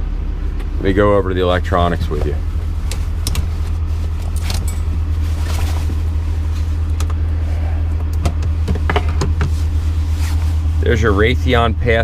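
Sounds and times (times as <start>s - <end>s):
loud low hum: 0.0s - 12.0s.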